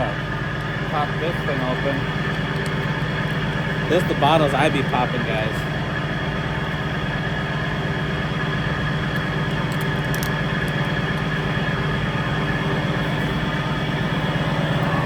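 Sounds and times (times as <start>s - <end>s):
diesel truck engine idling: 0.0s - 15.0s.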